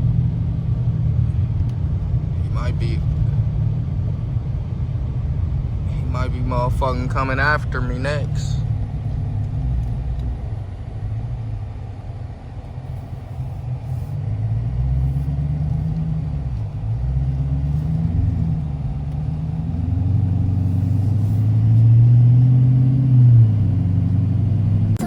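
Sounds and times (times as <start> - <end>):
car engine rumbling and revving: 0.0 - 25.0.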